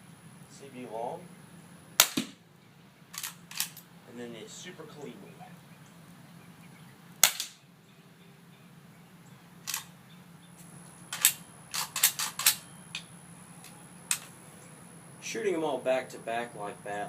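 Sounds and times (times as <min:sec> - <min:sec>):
rifle shot crack: 0:02.0 - 0:02.4, 0:07.2 - 0:07.6.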